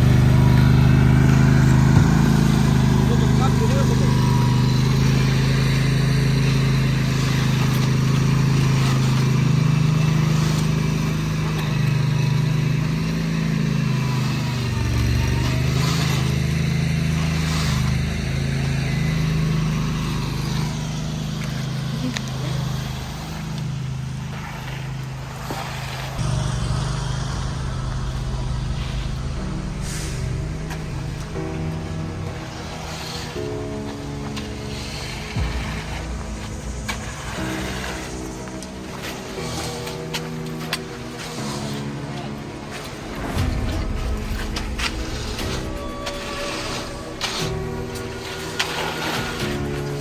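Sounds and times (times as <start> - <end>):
truck engine running: 0.0 - 50.0.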